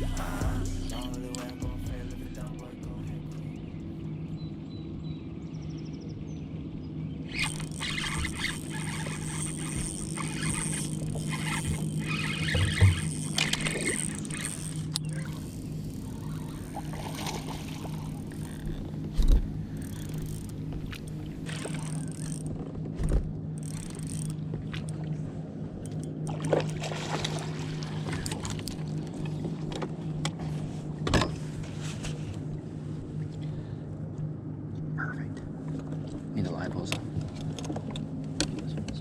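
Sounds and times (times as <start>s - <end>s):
boat motor humming: 0.0s - 39.0s
thumps and knocks on boat: 22.4s - 23.4s.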